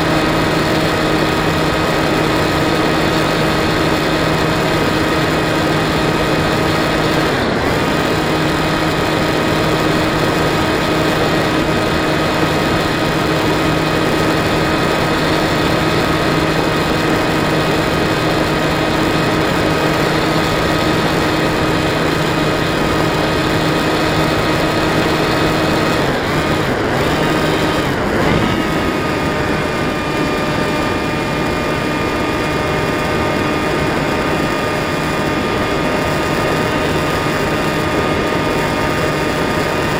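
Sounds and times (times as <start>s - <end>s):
model plane electric motor: 0.0s - 39.9s
rush of air: 24.2s - 32.9s.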